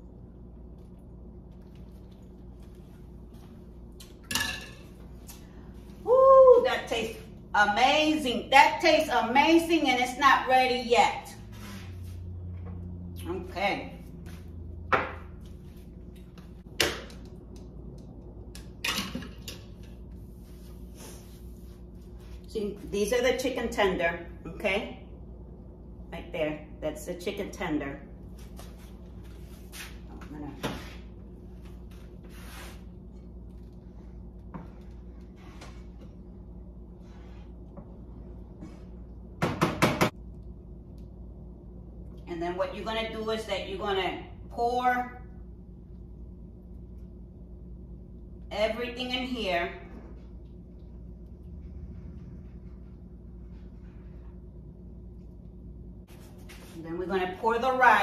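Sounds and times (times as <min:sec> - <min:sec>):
low appliance hum: 0:00.0 - 0:58.0
low hum: 0:40.1 - 0:57.9.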